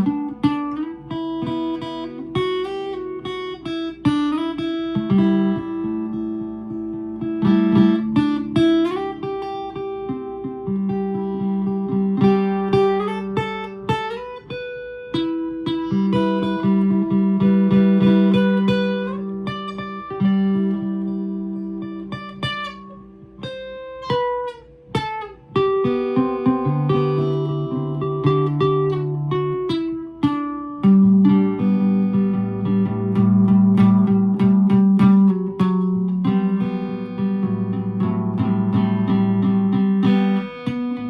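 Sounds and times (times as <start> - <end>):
solo guitar playing: 0.0 - 41.0.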